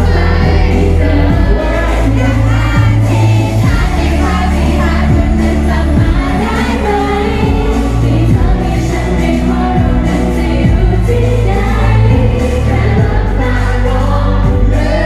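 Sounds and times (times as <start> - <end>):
pop song with singing: 0.0 - 15.0
steady bass line: 0.0 - 15.0.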